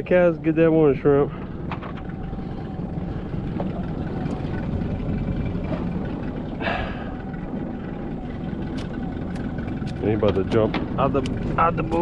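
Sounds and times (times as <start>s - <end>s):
outboard motor idling: 0.0s - 12.0s.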